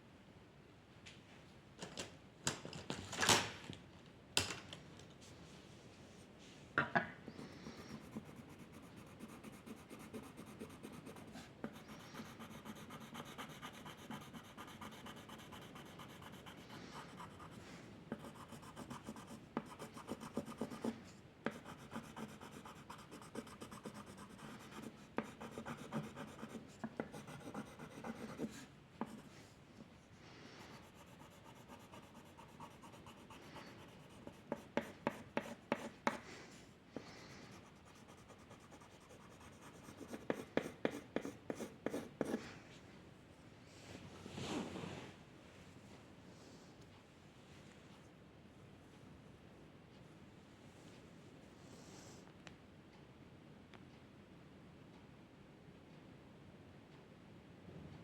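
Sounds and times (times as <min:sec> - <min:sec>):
pencil strokes scratching on paper: 0:07.3 - 0:29.4, 0:30.6 - 0:36.2, 0:37.0 - 0:42.4.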